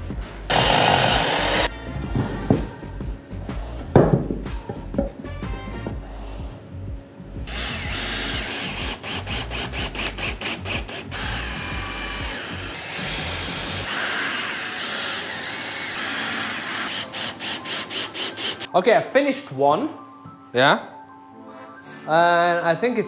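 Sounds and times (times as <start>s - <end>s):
power drill driving screws: 0.5s - 1.7s, 7.5s - 18.7s.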